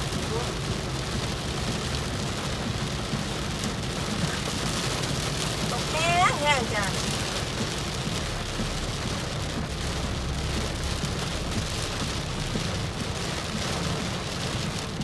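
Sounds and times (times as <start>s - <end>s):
heavy rain on car roof: 0.0s - 15.0s
low rumble: 6.9s - 15.0s.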